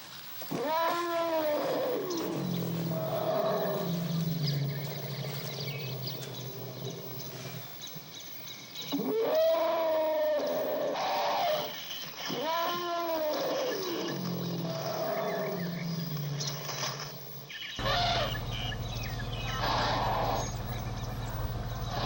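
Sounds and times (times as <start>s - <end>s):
animal calling: 0.4s - 8.1s, 8.8s - 17.0s, 17.7s - 22.0s
steady low hum: 17.8s - 22.0s.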